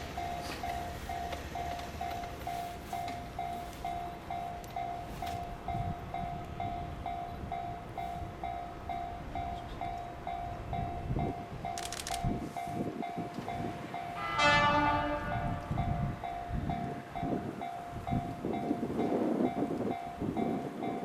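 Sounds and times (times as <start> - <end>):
level crossing warning bell: 0.0 - 21.0.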